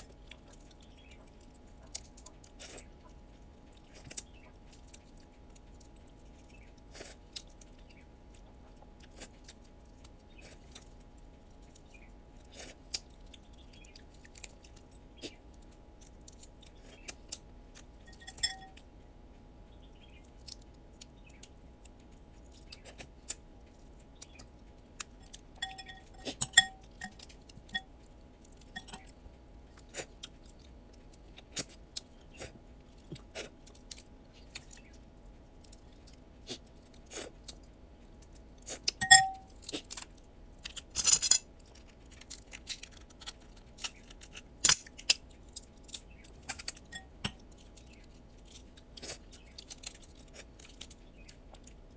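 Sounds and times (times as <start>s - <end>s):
chewing: 0.0s - 18.9s, 19.9s - 40.9s, 41.6s - 51.9s
crab shells cracking: 35.6s - 51.9s.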